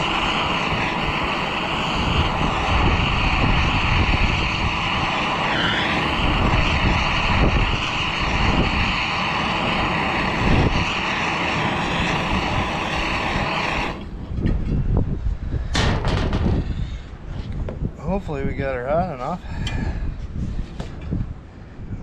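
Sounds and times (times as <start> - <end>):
gas torch hissing: 0.0 - 14.4
wind buffeting microphone: 0.0 - 22.0.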